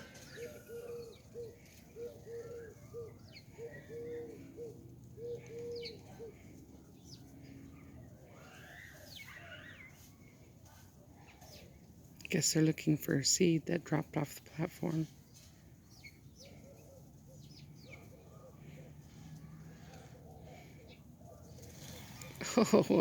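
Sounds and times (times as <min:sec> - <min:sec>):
low cooing notes: 0:00.0 - 0:06.4
birds twittering: 0:00.0 - 0:12.3, 0:15.2 - 0:23.0.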